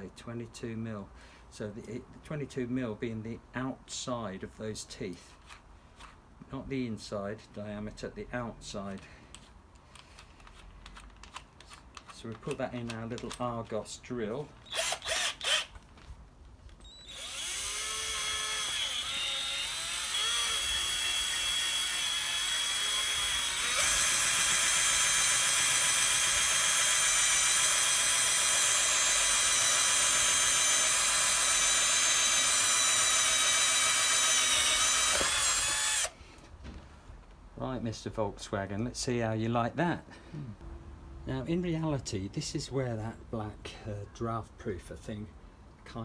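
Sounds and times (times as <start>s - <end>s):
electric drill motor whine: 14.6s - 15.7s, 16.8s - 36.2s.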